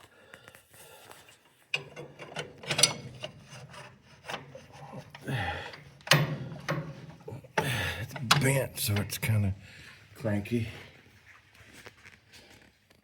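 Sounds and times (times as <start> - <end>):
steel parts scraping and knocking: 1.7 - 9.4.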